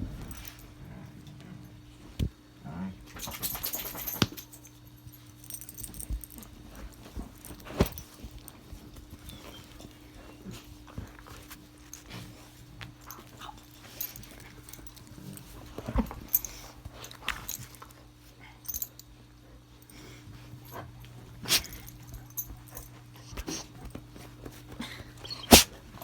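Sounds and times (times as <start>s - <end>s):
steady low hum: 0.0s - 26.0s
dog making small sounds: 25.2s - 25.8s.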